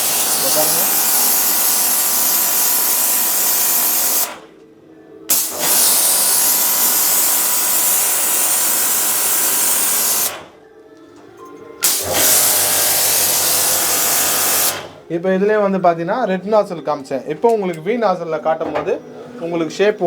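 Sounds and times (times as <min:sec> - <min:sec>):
pressure washer water jet hissing: 0:00.0 - 0:04.4, 0:05.3 - 0:10.5, 0:11.8 - 0:15.0
pump humming: 0:00.0 - 0:04.4, 0:11.8 - 0:15.0.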